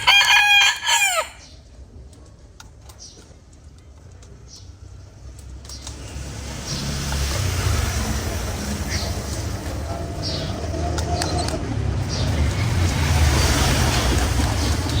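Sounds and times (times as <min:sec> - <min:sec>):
rooster crowing: 0:00.0 - 0:01.5.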